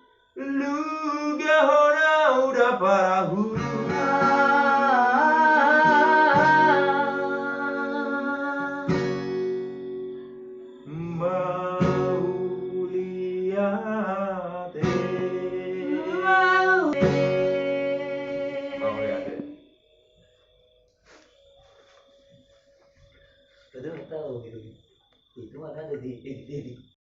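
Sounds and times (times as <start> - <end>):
strummed acoustic guitar: 0.6 - 19.6.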